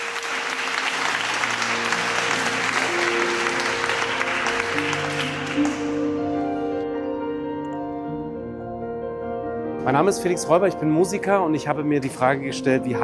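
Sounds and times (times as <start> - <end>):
audience applauding: 0.0 - 6.7
piano notes and chords: 0.0 - 13.0.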